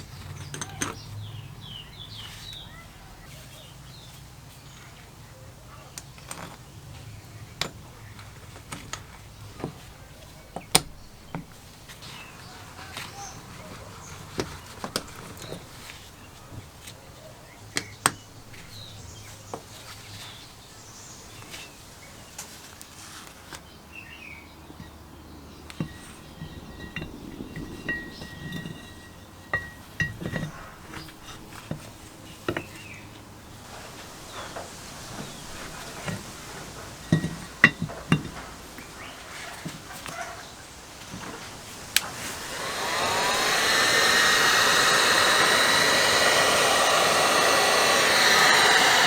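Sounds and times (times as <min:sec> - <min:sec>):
metal tools clinking and knocking: 0:00.1 - 0:01.1.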